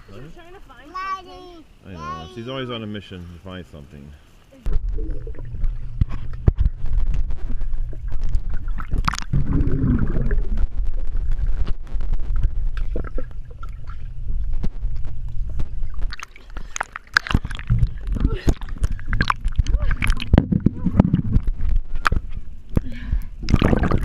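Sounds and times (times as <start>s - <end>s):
steady low rumble: 4.6s - 24.0s
pool water sloshing: 15.6s - 21.5s
sharp splashes: 15.7s - 22.2s.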